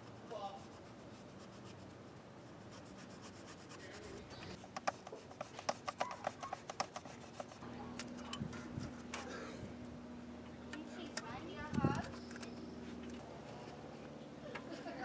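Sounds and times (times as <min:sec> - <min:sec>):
hand tool rubbing and scraping: 0:02.6 - 0:07.6.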